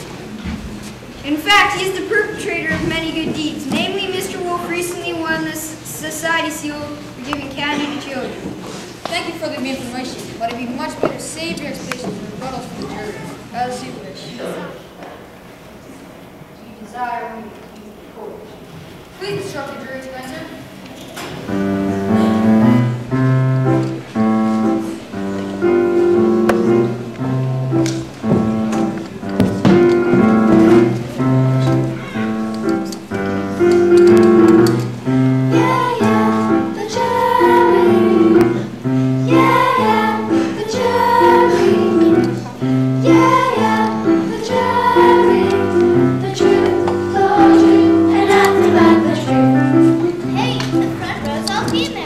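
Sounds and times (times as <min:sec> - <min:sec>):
piano music: 0:21.4 - 0:52.0
choir singing: 0:23.6 - 0:50.0.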